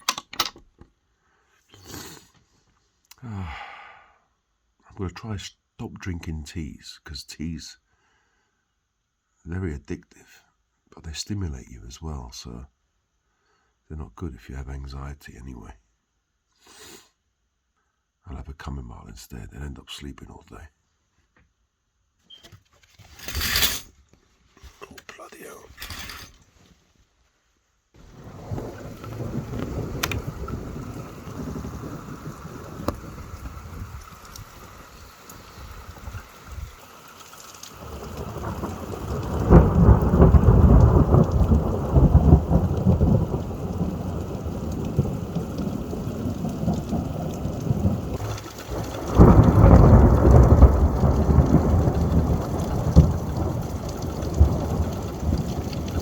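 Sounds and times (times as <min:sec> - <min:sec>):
rolling thunder: 0:28.0 - 0:36.8, 0:37.8 - 0:56.0
rain falling: 0:28.0 - 0:56.0.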